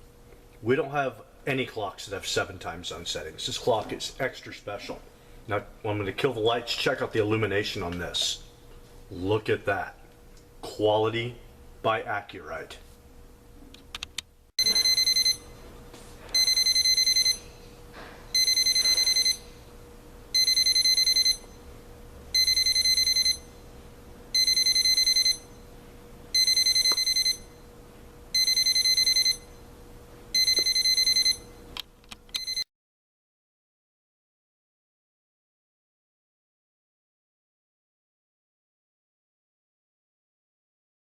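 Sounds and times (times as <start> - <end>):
alarm clock beeping: 14.6 - 15.6, 16.4 - 17.5, 18.3 - 19.6, 20.4 - 21.5, 22.4 - 23.5, 24.3 - 25.6, 26.3 - 27.6, 28.4 - 29.5, 30.4 - 31.5, 32.4 - 32.6.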